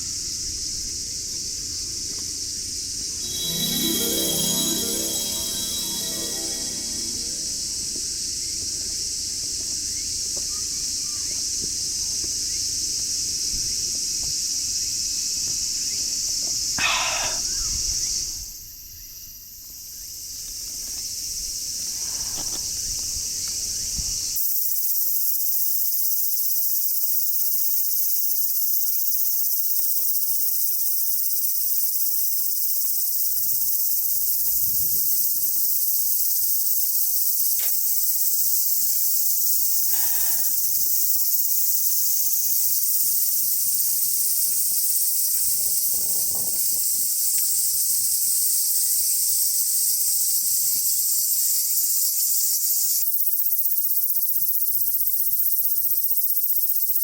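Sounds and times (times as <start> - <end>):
insect call: 15.1 - 57.0
insect chorus chirring: 16.6 - 20.3, 21.4 - 57.0.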